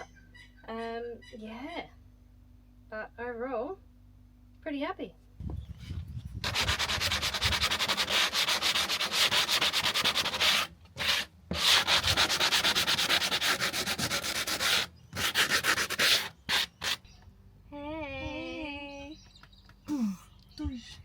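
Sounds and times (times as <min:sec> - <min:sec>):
sandpaper rasping on wood: 0:06.4 - 0:17.0.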